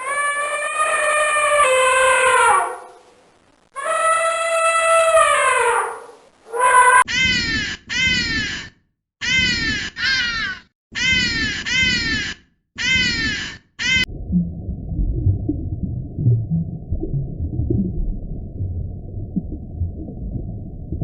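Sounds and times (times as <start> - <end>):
animal harsh falling calls: 3.8 - 14.1.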